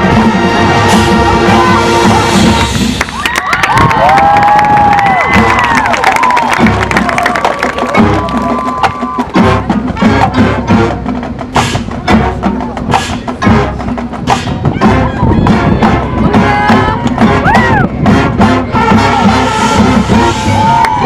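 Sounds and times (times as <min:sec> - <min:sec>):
marching band playing: 0:00.0 - 0:21.0.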